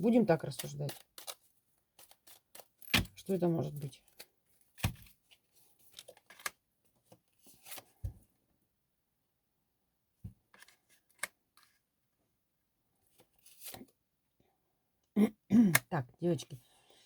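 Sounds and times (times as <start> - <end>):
cards rustling and tapping: 0.1 - 8.2, 10.3 - 11.8.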